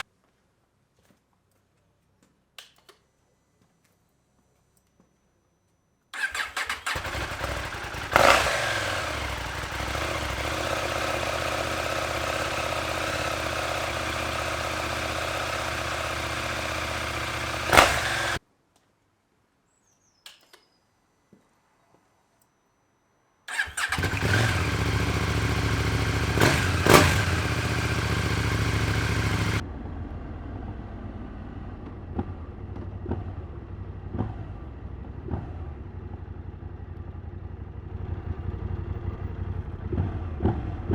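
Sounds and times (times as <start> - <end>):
engine revving bursts: 6.2 - 18.4, 23.5 - 29.6, 39.8 - 40.9
motorcycle engine idling: 6.2 - 18.4, 23.5 - 40.9.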